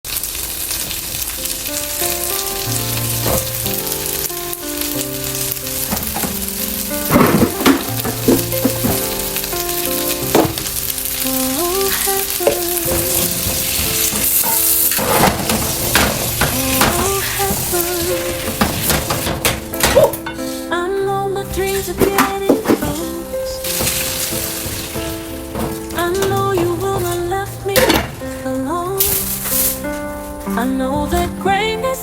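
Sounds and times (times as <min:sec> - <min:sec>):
oil sizzling in a frying pan: 0:00.0 - 0:20.5, 0:23.6 - 0:26.2
utensil knocking against pan: 0:12.8 - 0:20.4.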